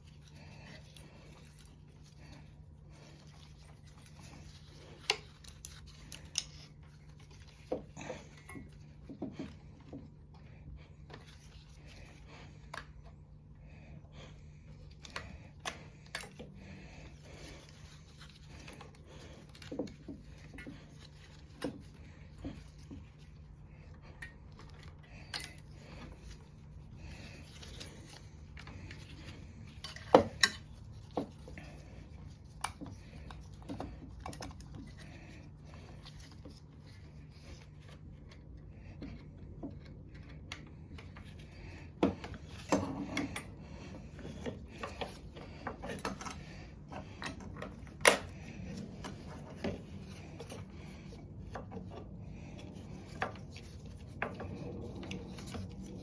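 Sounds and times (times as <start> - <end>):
faint steady hum: 0.0 - 56.0.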